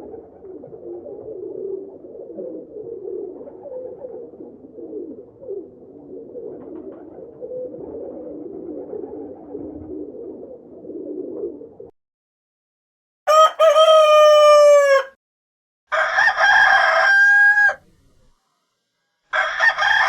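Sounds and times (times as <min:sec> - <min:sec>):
pigeons cooing: 0:00.0 - 0:11.8.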